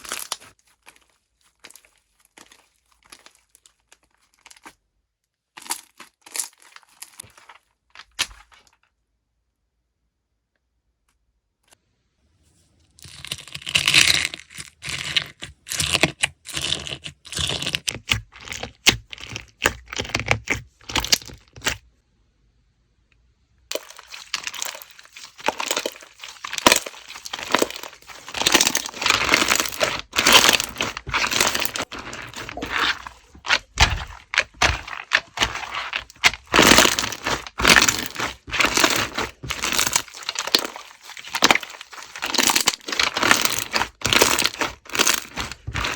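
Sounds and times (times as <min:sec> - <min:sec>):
slime squished by hand: 0:23.7 - 0:45.9.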